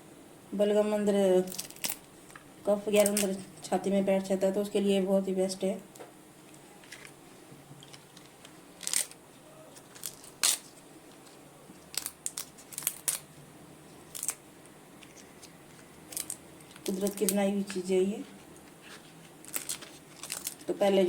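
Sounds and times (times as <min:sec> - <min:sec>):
leaves being torn by hand: 0:09.8 - 0:10.7, 0:14.1 - 0:14.4, 0:19.4 - 0:20.7.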